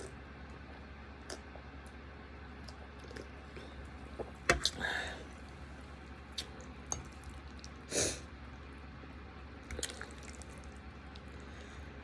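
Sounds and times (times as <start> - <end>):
electric fan humming: 0.0 - 12.0
wet breathy eating sound: 4.6 - 5.6, 9.7 - 12.0.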